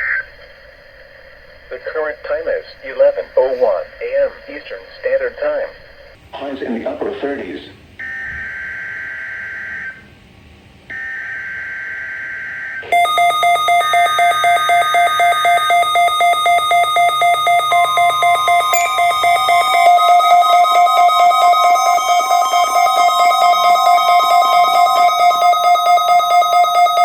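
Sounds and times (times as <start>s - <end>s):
two-tone digital data screeches: 15.0s - 27.0s.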